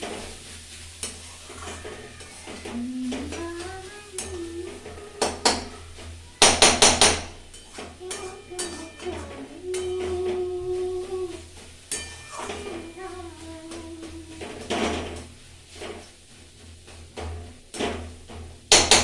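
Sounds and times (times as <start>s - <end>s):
metal cookware clanking: 0.0s - 19.0s
woman singing: 2.5s - 5.8s, 8.0s - 11.6s, 12.3s - 15.2s.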